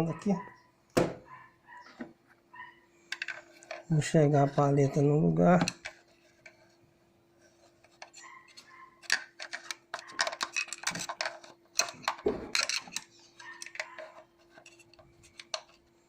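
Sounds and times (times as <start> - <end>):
screwdriver clicking on metal parts: 8.0 - 15.8.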